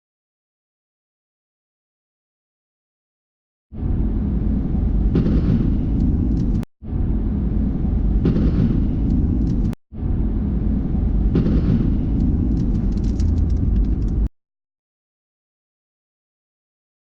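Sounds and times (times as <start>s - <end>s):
thunder rumble and crack: 3.7s - 14.3s.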